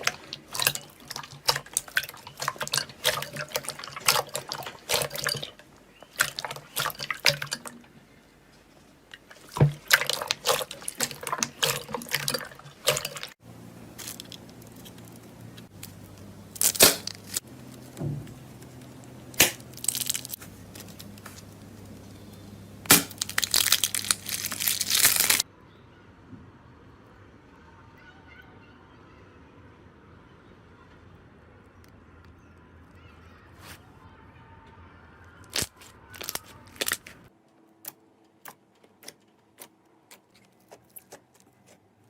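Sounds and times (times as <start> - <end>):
slime squeezed by hand: 22.9 - 25.4.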